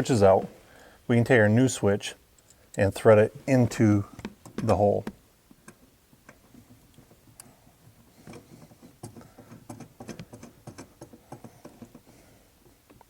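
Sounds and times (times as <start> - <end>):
fingers scraping plastic and metal: 8.2 - 12.2.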